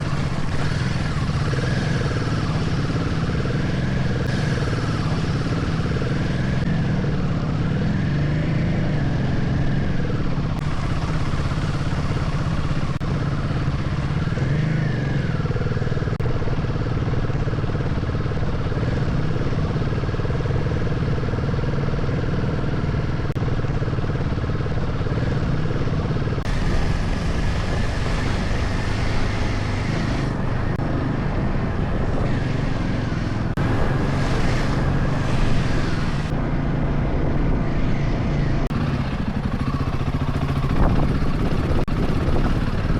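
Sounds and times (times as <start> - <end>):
motorcycle engine revving: 0.0 - 42.9.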